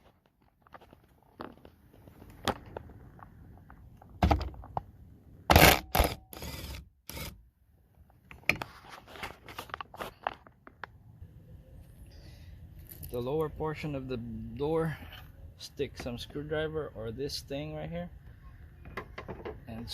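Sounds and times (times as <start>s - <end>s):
wrench knocking and scraping: 18.8s - 19.8s.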